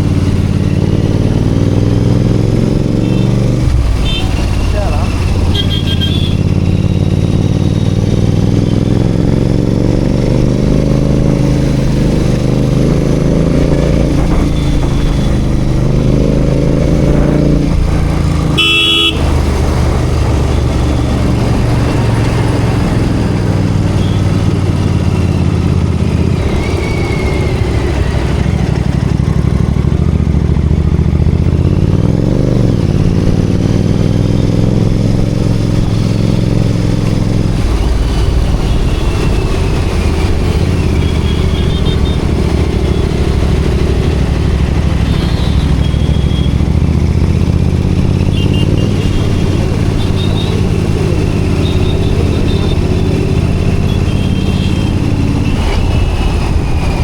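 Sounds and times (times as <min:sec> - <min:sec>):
motorcycle engine running: 0:00.0 - 0:57.0
vehicle horn honk: 0:03.0 - 0:04.7, 0:05.4 - 0:06.5, 0:18.5 - 0:19.3, 0:24.0 - 0:24.2, 0:41.0 - 0:42.2, 0:45.1 - 0:46.6, 0:48.3 - 0:49.4, 0:50.0 - 0:50.6, 0:51.6 - 0:52.8, 0:53.8 - 0:54.9.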